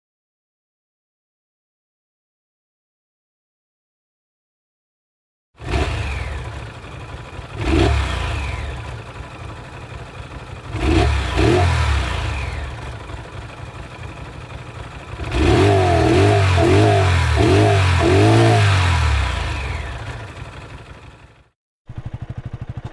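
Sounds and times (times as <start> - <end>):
motorcycle engine revving: 5.6 - 22.9.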